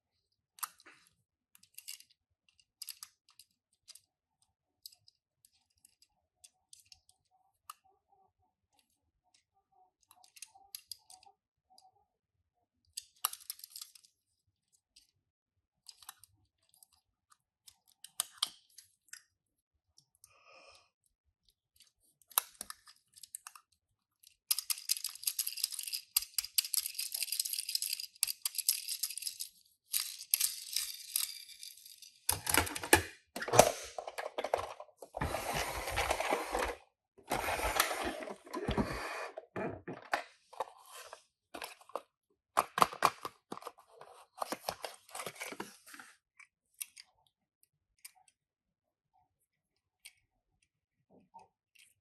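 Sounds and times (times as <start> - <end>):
packaging clicks and taps: 40.0 - 45.8.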